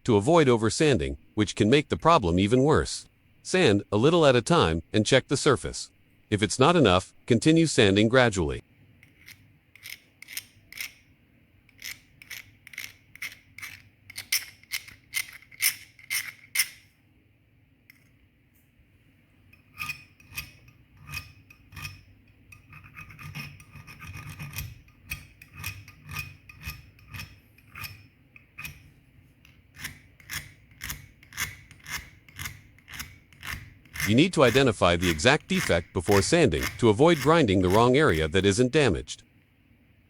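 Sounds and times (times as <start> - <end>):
sandpaper rasping on metal: 29.8 - 38.5.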